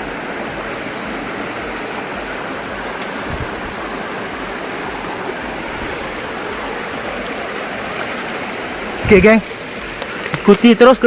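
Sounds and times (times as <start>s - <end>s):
waterfall and river rushing: 0.0s - 11.0s.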